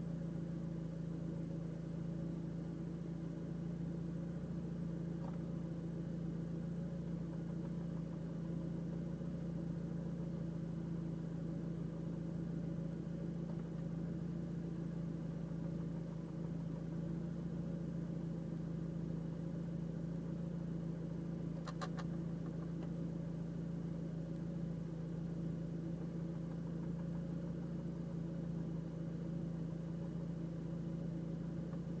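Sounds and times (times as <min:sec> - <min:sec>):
car engine idling: 0:00.0 - 0:32.0
sharp engine ticks: 0:21.6 - 0:22.9.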